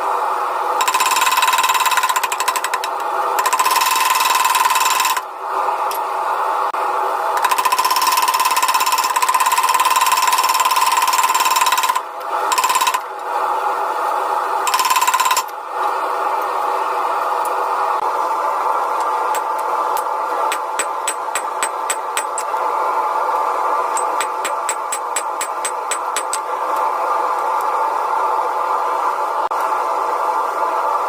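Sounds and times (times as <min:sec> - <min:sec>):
steady ringing tone: 0:14.7 - 0:15.5
power hammer striking: 0:19.0 - 0:22.6, 0:23.9 - 0:26.5.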